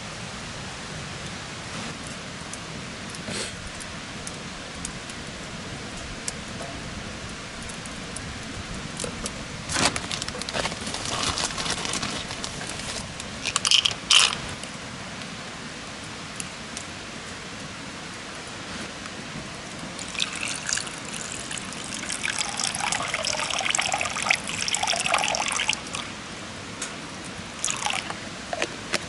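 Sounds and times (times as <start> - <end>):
campfire crackling and popping: 1.9 - 15.3, 18.4 - 26.1
camp gear clattering and rustling: 9.7 - 14.6.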